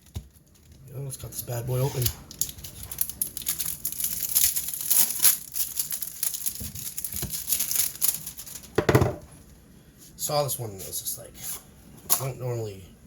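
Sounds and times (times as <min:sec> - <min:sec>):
packaging crinkling and tearing: 0:00.0 - 0:08.8.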